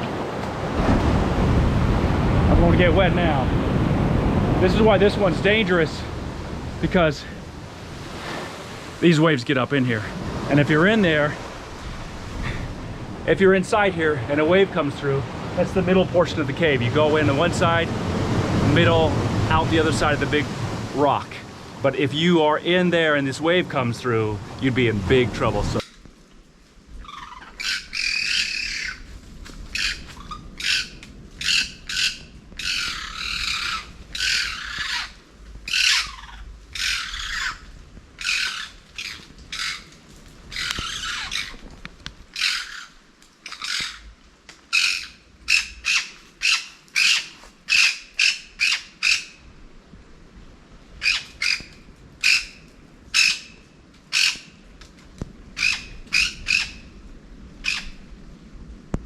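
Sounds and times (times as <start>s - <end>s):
bird harsh squawks: 27.0s - 29.0s, 29.7s - 39.9s, 40.5s - 41.6s, 42.3s - 44.1s, 44.7s - 49.4s, 51.0s - 54.5s, 55.6s - 56.9s, 57.6s - 58.0s.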